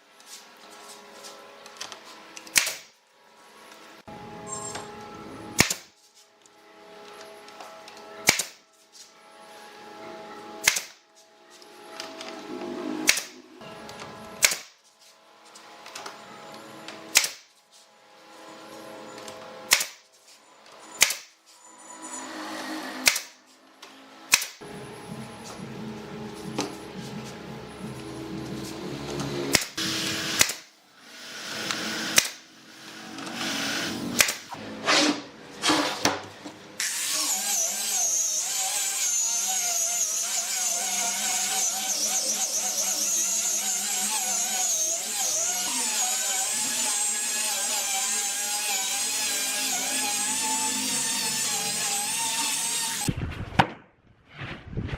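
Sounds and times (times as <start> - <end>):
power tool whining: 24.6 - 36.1, 36.8 - 53.1.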